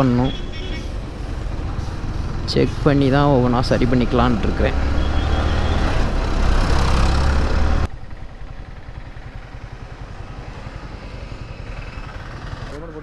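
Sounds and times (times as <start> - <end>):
motorcycle engine: 0.0 - 13.0
motorcycle engine idling: 7.9 - 13.0.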